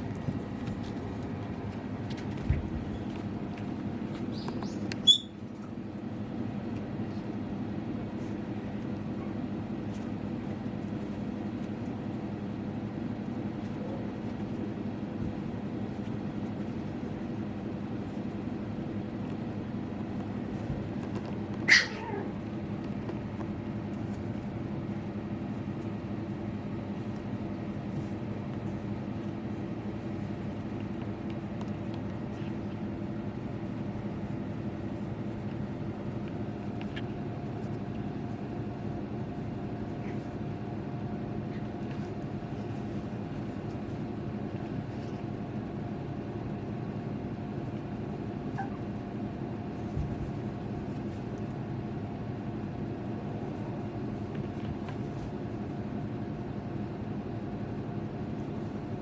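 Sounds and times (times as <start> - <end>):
steady low hum: 0.0 - 59.0
puppy yelping: 4.3 - 5.4, 21.6 - 22.5, 48.5 - 48.9.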